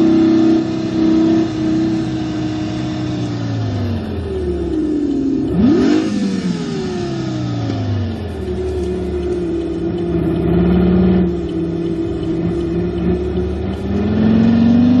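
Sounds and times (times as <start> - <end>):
simulated sports car engine: 0.0 - 15.0.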